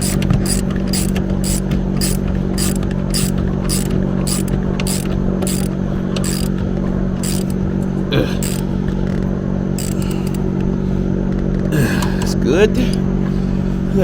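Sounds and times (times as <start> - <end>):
hand ratchet clicking: 0.0 - 6.6, 7.2 - 7.6, 8.4 - 8.7, 9.8 - 10.4
low hum: 0.0 - 14.0.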